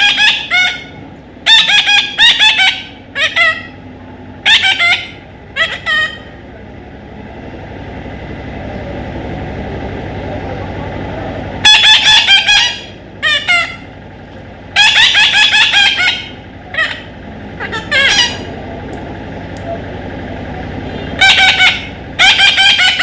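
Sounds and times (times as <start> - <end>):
harsh bird chattering: 0.0 - 3.8, 4.4 - 6.4, 11.6 - 13.9, 14.7 - 18.7, 20.9 - 23.0.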